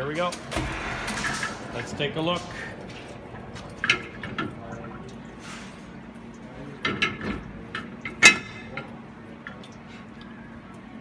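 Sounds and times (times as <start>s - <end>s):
low steady hum: 0.0s - 11.0s
machine cover opening: 0.4s - 3.9s.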